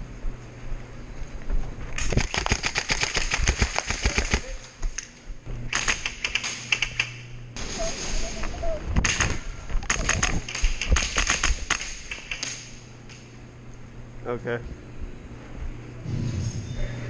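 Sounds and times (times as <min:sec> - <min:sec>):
airsoft guns firing bursts: 0:02.0 - 0:04.6, 0:05.7 - 0:08.1, 0:09.0 - 0:12.8.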